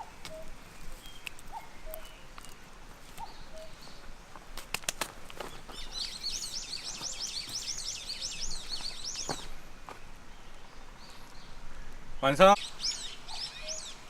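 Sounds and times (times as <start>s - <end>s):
songbird singing high notes: 12.2s - 14.0s.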